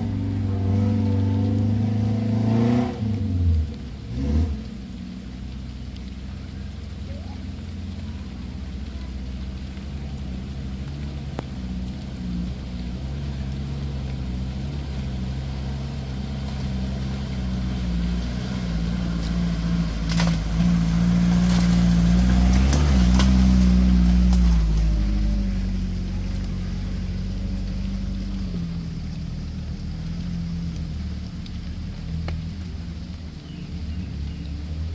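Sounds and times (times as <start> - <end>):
off-road vehicle engine running: 0.0 - 34.9.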